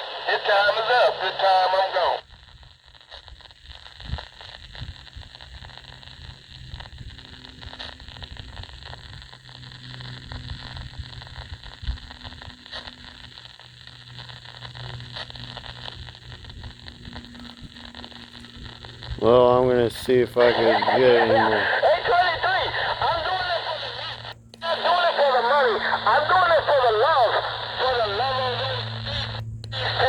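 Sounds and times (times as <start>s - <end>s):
radio static hiss: 0.0s - 30.0s
static crackles: 0.0s - 30.0s
low hum: 5.6s - 30.0s.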